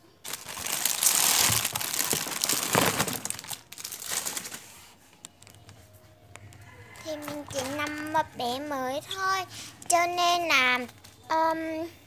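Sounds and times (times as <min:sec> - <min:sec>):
paper and tape crinkling: 0:00.2 - 0:08.4.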